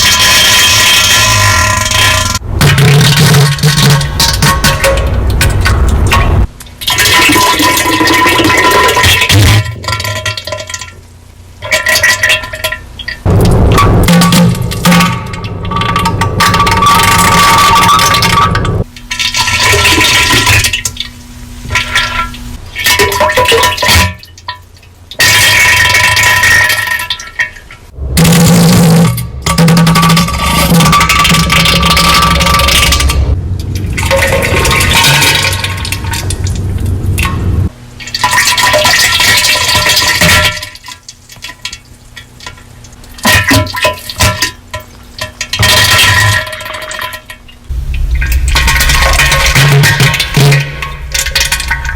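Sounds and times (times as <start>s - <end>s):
distorted wet sputtering bursts: 28.0s - 37.7s, 47.7s - 51.9s
splattering diarrhea sound effect: 47.7s - 51.9s.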